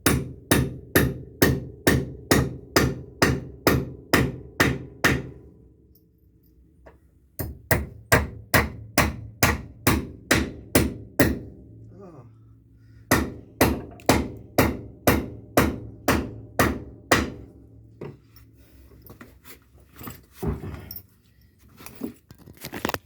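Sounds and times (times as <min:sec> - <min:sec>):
hammer striking timber: 0:00.0 - 0:05.4, 0:07.4 - 0:11.6, 0:13.1 - 0:18.2.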